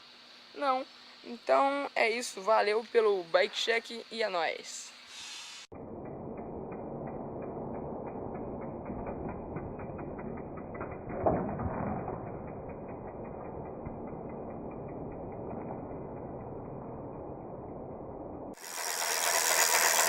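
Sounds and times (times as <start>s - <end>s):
rapid ratchet-like mechanical clicking: 18.6s - 20.0s.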